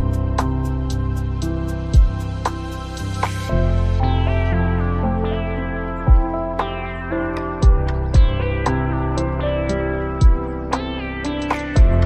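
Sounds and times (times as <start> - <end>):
plucked guitar music with beat: 0.0 - 12.0.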